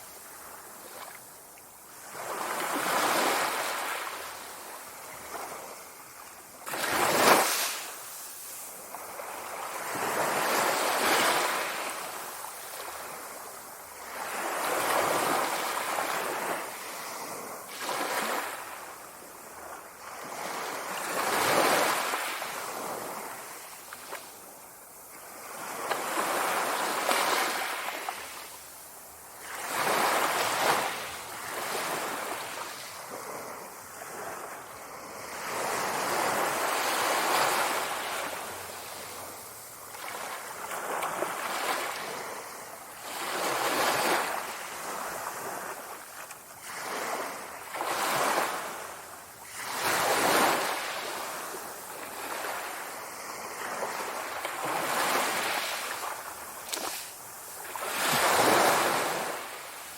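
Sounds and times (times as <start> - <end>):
sea waves washing onto shore: 0.0 - 59.9
wind: 0.0 - 59.9.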